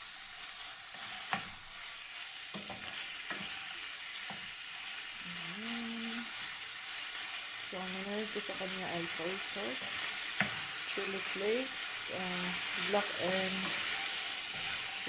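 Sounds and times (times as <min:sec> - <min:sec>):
meat sizzling in oil: 0:00.0 - 0:15.0.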